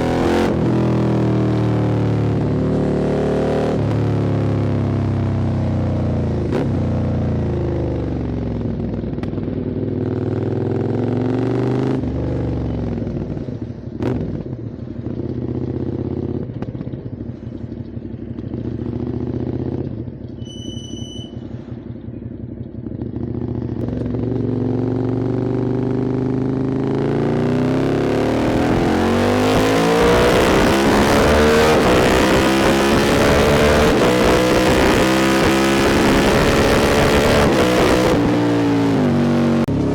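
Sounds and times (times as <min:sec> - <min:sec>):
motorcycle engine: 0:00.0 - 0:39.9
short high beep: 0:20.4 - 0:21.5.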